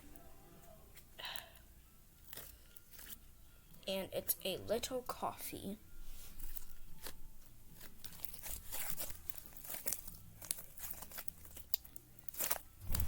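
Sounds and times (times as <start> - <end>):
slime stretching and tearing: 6.5 - 13.0.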